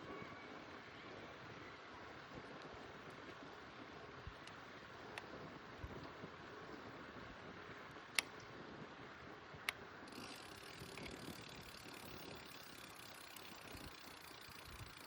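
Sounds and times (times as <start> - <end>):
bicycle drivetrain clicks: 9.6 - 15.0
freewheel ticking: 10.1 - 15.0.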